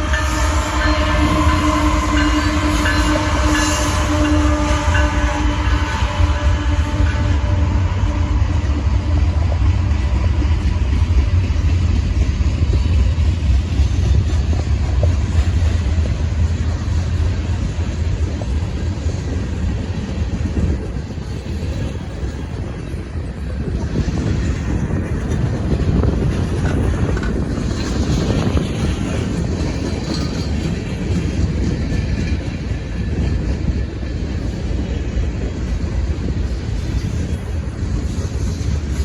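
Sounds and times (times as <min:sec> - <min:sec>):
train horn: 0:00.0 - 0:10.4
train wheels rumbling on rails: 0:00.0 - 0:39.0.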